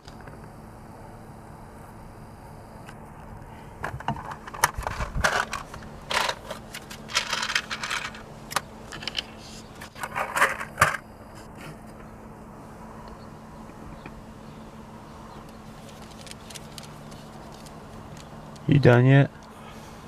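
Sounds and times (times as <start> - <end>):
tools clicking and rattling: 4.0 - 11.0.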